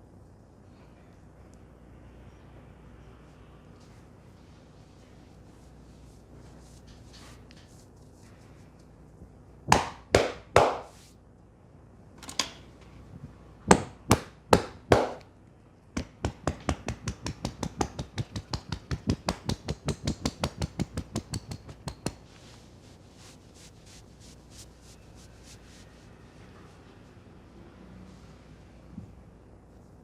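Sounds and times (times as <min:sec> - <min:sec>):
hand slaps on head and shoulders: 0:09.7 - 0:11.0, 0:13.7 - 0:15.3, 0:16.0 - 0:22.3.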